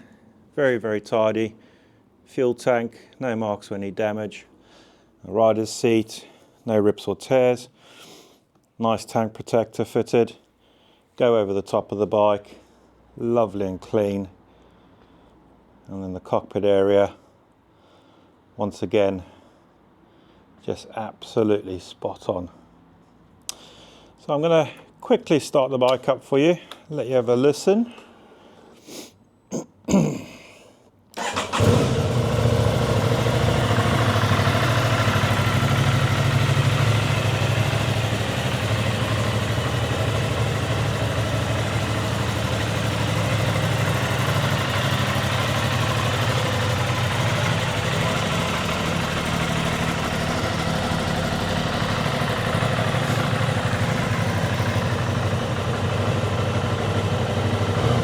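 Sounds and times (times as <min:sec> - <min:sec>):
motorcycle engine starting and idling: 0:31.2 - 0:58.0.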